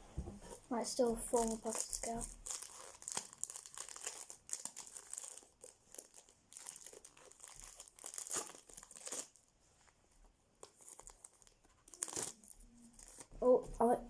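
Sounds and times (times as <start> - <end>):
foil wrapper tearing and crinkling: 1.3 - 9.5, 10.6 - 13.4.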